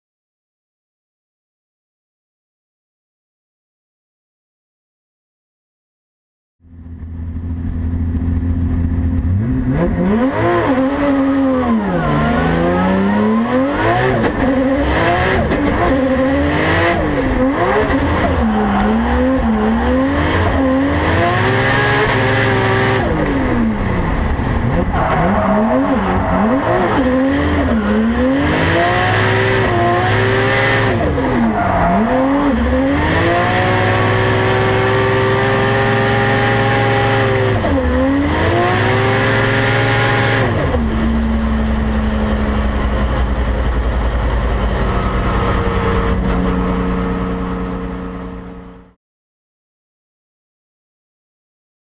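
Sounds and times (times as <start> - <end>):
car engine revving hard: 9.2 - 48.9
tire squeal: 10.8 - 14.9, 17.4 - 20.8, 24.7 - 28.4, 31.0 - 32.7.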